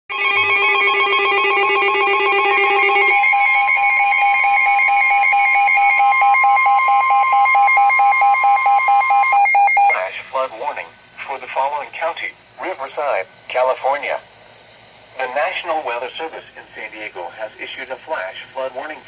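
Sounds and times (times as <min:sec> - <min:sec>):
pulsing electronic beep: 0:00.1 - 0:10.0
steady warning alarm tone: 0:00.1 - 0:10.0.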